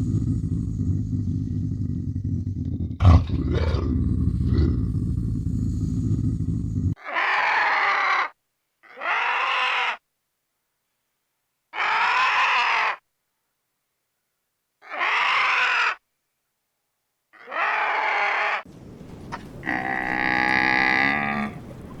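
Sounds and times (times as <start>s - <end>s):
animal call: 14.8s - 16.0s, 19.2s - 22.0s.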